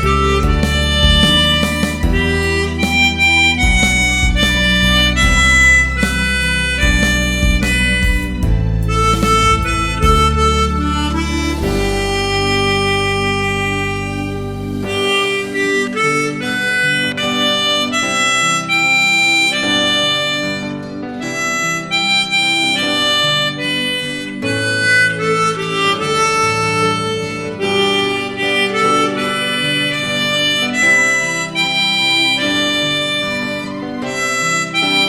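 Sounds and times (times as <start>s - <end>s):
low sustained accompaniment: 0.0s - 18.0s
harmonica melody: 0.0s - 35.0s.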